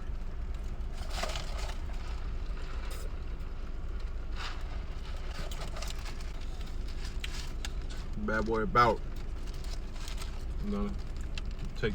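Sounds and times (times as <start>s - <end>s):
soft rustles: 0.8s - 8.6s.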